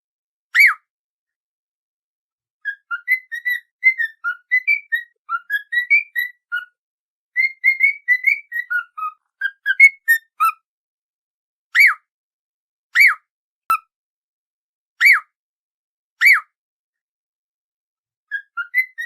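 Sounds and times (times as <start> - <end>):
whistled tune: 0.5 - 0.9, 2.6 - 10.6, 11.7 - 12.1, 13.0 - 13.9, 15.0 - 15.4, 16.2 - 16.6, 18.3 - 19.0.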